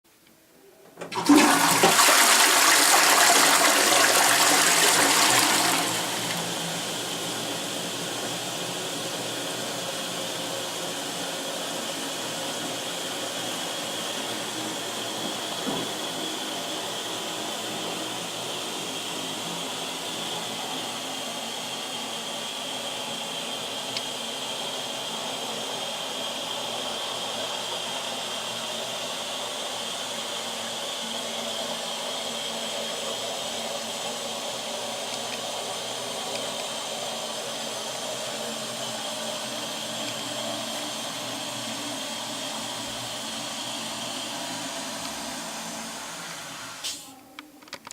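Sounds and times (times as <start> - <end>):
toilet cistern refilling: 1.0 - 18.4.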